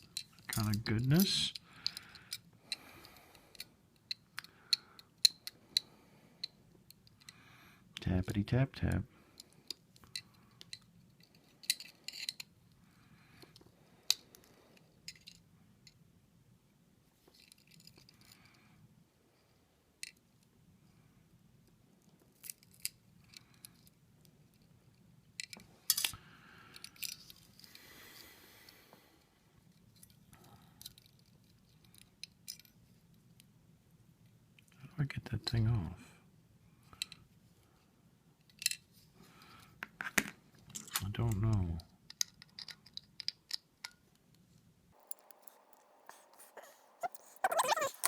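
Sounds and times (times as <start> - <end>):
metallic clicks of small tools: 0.0 - 7.4, 9.4 - 12.5, 20.0 - 20.2, 22.4 - 24.6, 25.4 - 27.4, 30.8 - 32.7, 42.1 - 44.0, 45.0 - 48.0.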